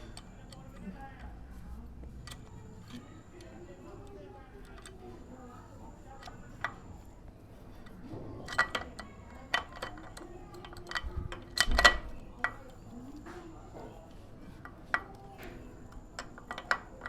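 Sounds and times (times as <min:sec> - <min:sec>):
metal tools clinking together: 0:14.6 - 0:17.0.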